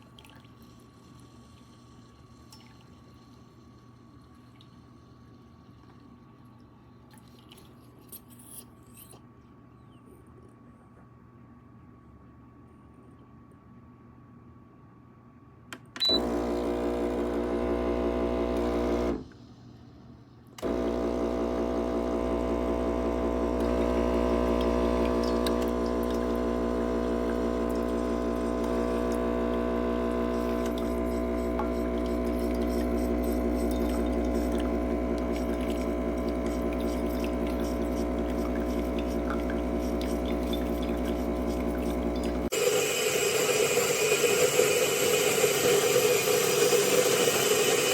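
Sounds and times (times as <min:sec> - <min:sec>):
espresso machine pump buzzing: 0:16.0 - 0:19.4, 0:20.6 - 0:47.9.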